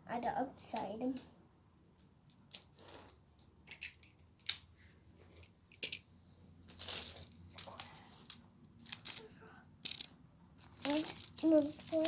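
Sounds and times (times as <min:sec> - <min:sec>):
plastic tiles scraping rustle: 0:02.3 - 0:06.0, 0:06.6 - 0:12.0
plastic tiles clicking together: 0:06.7 - 0:12.0.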